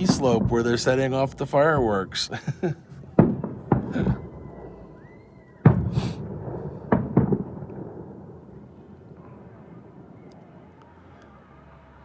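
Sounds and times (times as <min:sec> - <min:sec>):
fireworks banging: 0:00.0 - 0:10.7
faint rising whistle: 0:04.1 - 0:05.8.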